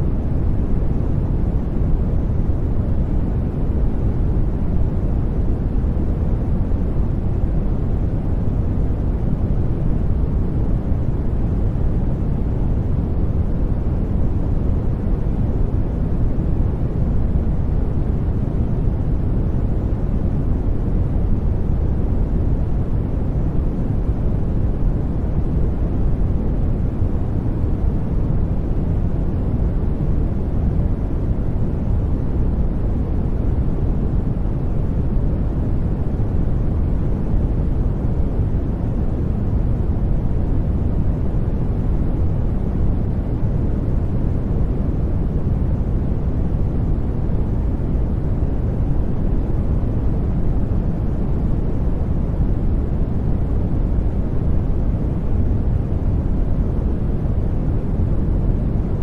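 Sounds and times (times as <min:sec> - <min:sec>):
deep rumbling white noise: 0:00.0 - 0:59.0.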